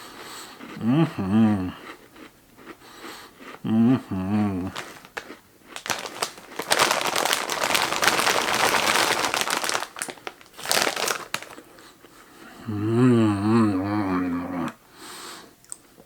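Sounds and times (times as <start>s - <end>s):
snack packaging crinkling: 4.7s - 11.9s.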